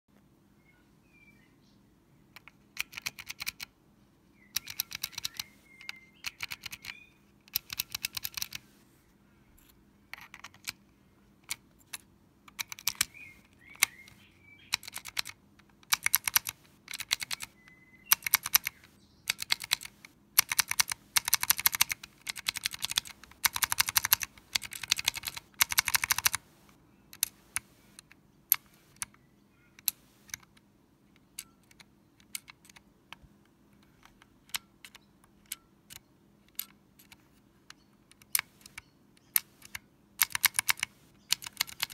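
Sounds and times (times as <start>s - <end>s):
faint bird chirps: 0.5s - 11.4s, 12.6s - 15.4s, 16.0s - 19.9s, 20.5s - 30.4s
clicky keyboard typing: 2.4s - 3.7s, 4.5s - 8.7s, 9.6s - 10.8s, 11.4s - 33.2s, 33.8s - 41.9s.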